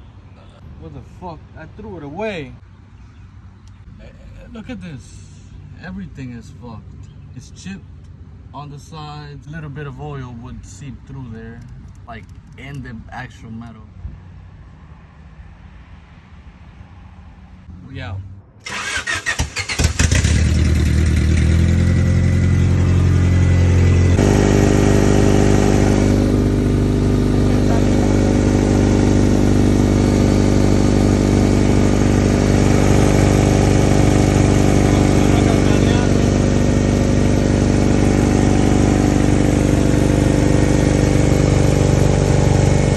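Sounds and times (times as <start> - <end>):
car engine running: 11.2 - 13.0, 18.7 - 42.9.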